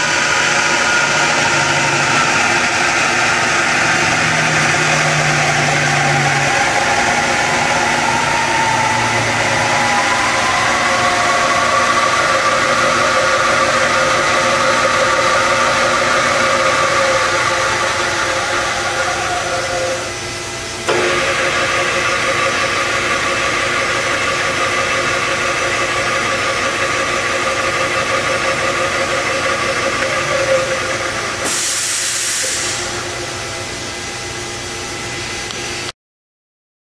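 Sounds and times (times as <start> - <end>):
drill press whining: 0.0 - 35.6
brief hiss: 31.4 - 33.0.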